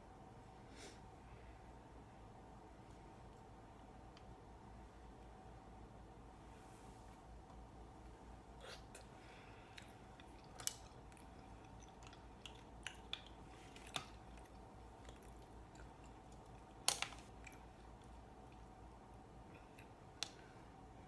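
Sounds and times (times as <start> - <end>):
faint chewing: 8.6 - 18.8, 19.4 - 20.5
shells cracking and crunching: 10.3 - 11.0, 16.3 - 17.6.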